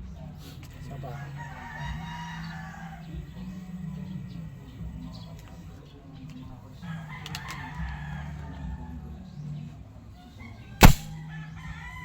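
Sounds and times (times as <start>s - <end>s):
toy gun clicks: 10.8s - 11.1s
toy gun shot: 10.8s - 11.2s.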